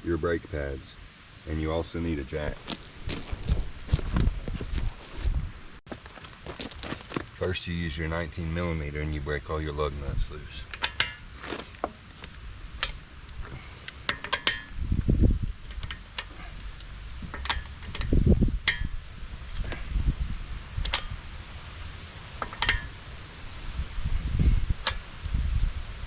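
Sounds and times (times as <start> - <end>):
heavy low thuds: 2.5 - 5.8
metal socket clinking on lug nuts: 10.7 - 11.2, 14.1 - 14.7, 22.4 - 22.9.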